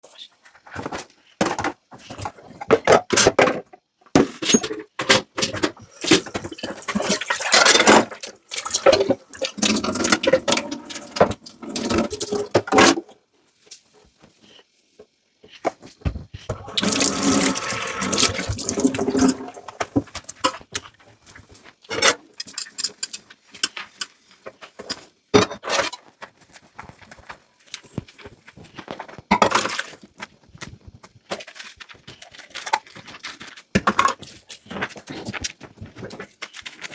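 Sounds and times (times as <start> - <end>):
tap water running into sink: 5.8 - 12.6, 16.5 - 20.4.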